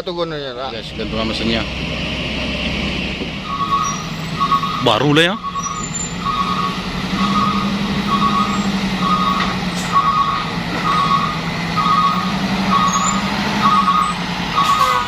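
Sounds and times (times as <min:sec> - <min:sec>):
diesel engine running: 0:00.0 - 0:15.0
reversing alarm beeping: 0:03.4 - 0:15.0.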